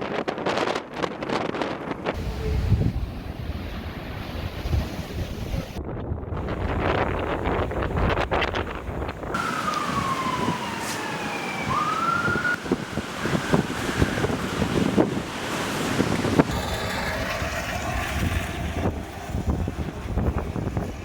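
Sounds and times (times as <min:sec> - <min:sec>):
wind buffeting microphone: 0:00.0 - 0:21.0
emergency siren wailing: 0:09.3 - 0:21.0.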